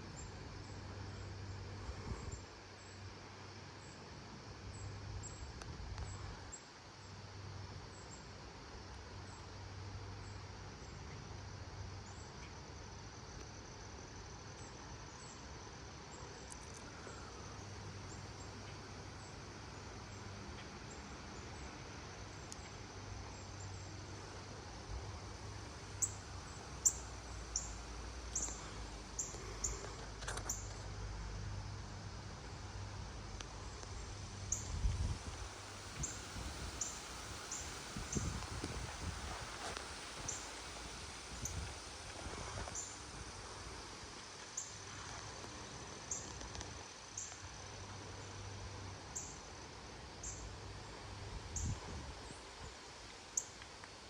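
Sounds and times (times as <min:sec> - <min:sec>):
gusty wind buffeting microphone: 0:34.5 - 0:43.4.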